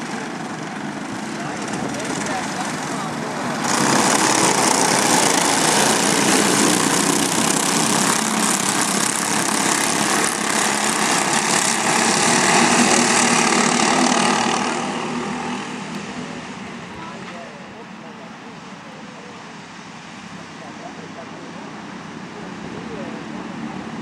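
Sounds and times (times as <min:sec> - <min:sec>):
loud rushing hiss: 0:00.0 - 0:17.6
go-kart engine running: 0:00.0 - 0:18.1.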